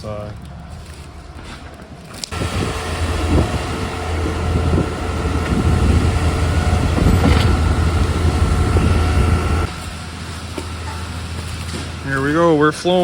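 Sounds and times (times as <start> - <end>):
diesel engine droning: 2.3 - 12.6
rattles and knocks: 2.4 - 9.7.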